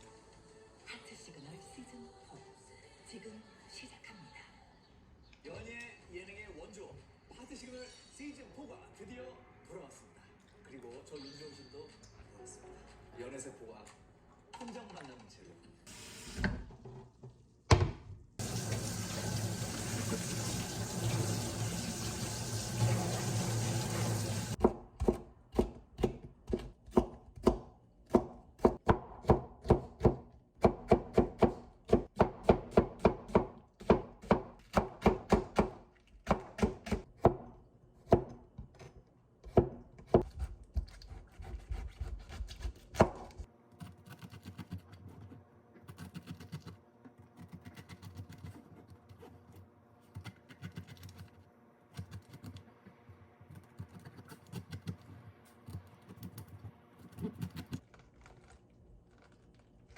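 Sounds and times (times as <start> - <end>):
knife chopping on cutting board: 24.6 - 38.4, 39.4 - 46.7.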